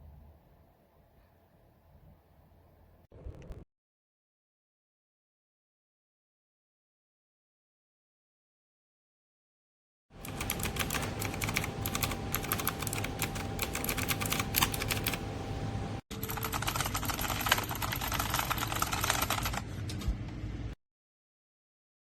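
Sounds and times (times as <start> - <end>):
mechanical keyboard typing: 10.2 - 15.3, 16.1 - 19.6.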